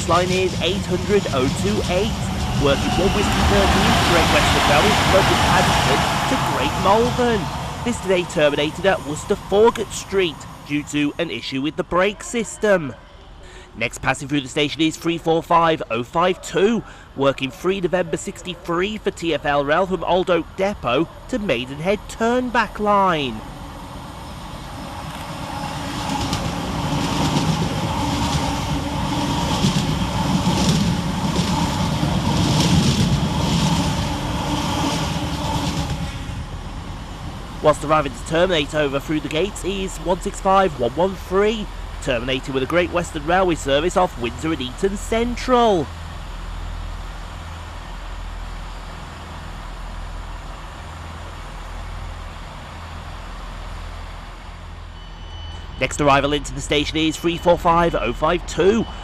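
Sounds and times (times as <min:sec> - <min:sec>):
two-tone train hum: 0:00.0 - 0:59.0
wheels rumbling on rail: 0:00.0 - 0:59.0.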